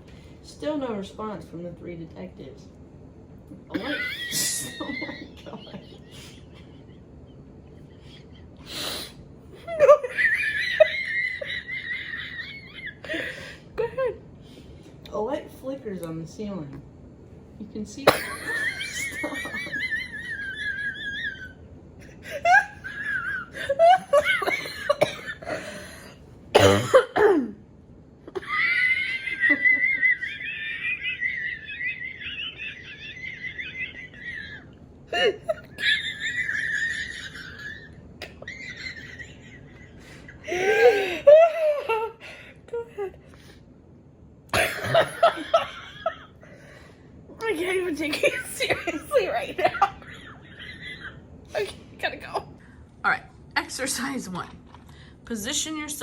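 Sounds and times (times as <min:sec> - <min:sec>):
woman laughing squeakily: 0:19.0 - 0:21.6, 0:28.4 - 0:42.1.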